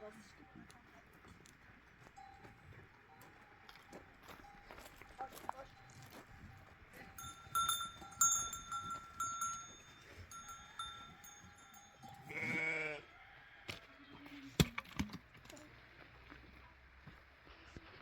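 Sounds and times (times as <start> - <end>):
livestock bells ringing: 0.1 - 12.9
long wavering bleat: 12.2 - 13.1.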